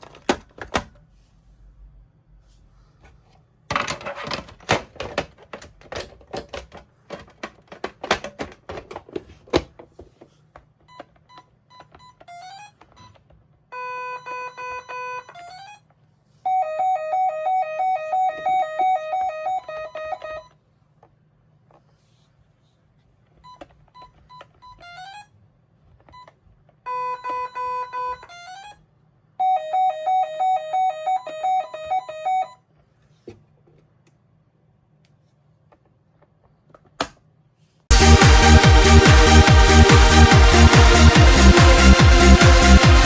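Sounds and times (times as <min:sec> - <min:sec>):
alarm beeps and chirps: 0:16.5 - 0:20.5, 0:29.4 - 0:32.6
two-tone alarm warble: 0:16.5 - 0:20.5, 0:29.4 - 0:32.6.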